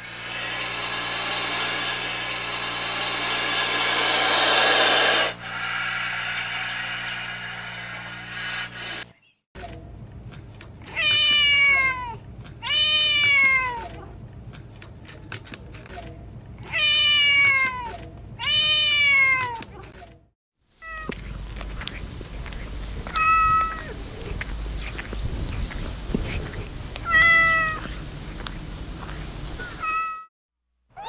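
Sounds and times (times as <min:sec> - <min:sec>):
kitten meowing: 0:23.0 - 0:24.0, 0:27.0 - 0:28.0, 0:29.6 - 0:30.3.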